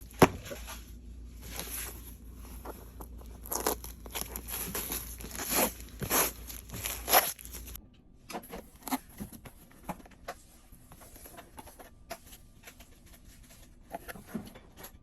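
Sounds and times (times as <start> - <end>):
packaging crinkling and tearing: 1.4 - 7.8.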